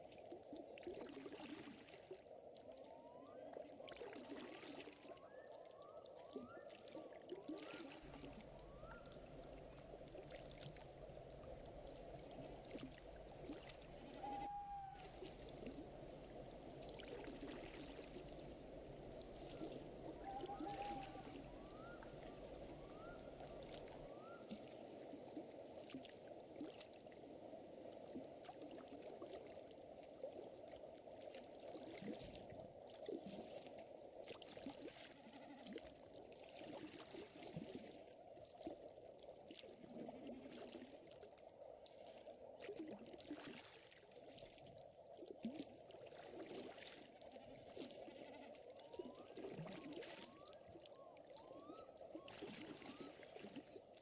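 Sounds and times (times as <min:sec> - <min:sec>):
water lapping and trickling: 0:00.0 - 0:54.0
short animal calls: 0:14.0 - 0:15.2, 0:20.2 - 0:24.5.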